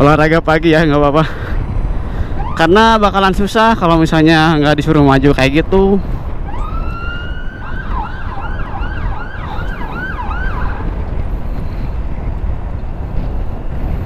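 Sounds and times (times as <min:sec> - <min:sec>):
wind and road rumble: 0:00.0 - 0:14.0
electronic siren yelping: 0:02.4 - 0:02.9, 0:06.4 - 0:11.0.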